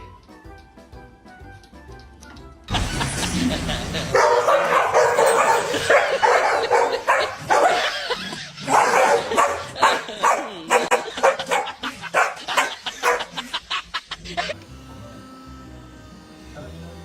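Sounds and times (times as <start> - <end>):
dog barking: 4.1 - 8.0, 8.7 - 13.3.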